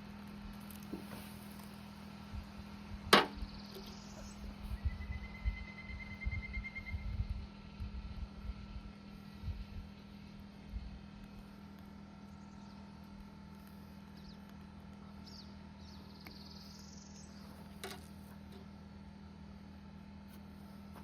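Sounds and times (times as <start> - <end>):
steady low hum: 0.0 - 21.0
faint bird chirps: 3.4 - 7.6, 12.2 - 13.0, 14.1 - 17.7.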